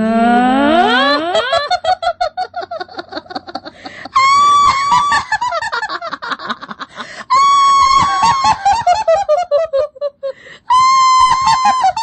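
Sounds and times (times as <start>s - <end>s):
shrill cackling laugh: 0.9s - 12.0s
long loud shrieks: 7.3s - 8.6s, 10.7s - 12.0s.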